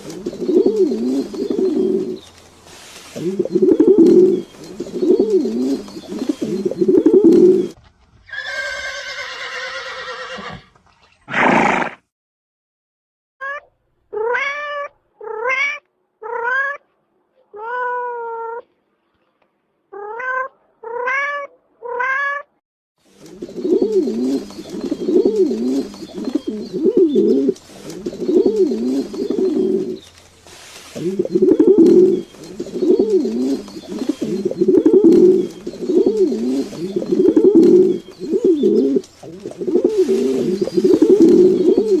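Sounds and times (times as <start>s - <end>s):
low repeated calling: 23.6s - 30.1s, 30.9s - 42.0s.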